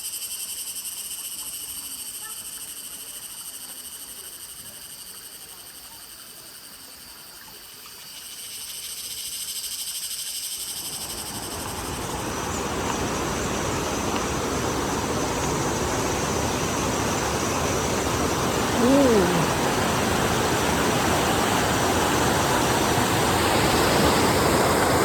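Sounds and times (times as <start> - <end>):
frogs and insects trilling: 0.0 - 25.0
running water rushing: 10.7 - 25.0.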